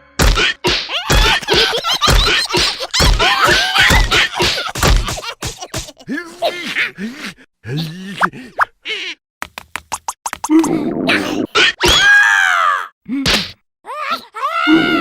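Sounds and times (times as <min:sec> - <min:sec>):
heavy cartoon thumps: 0:00.2 - 0:06.0.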